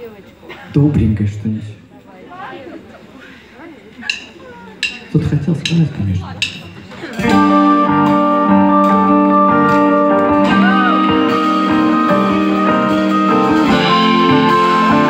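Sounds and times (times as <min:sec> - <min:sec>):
live band instrumental music: 0:04.1 - 0:15.0
guitar bending note: 0:07.2 - 0:15.0.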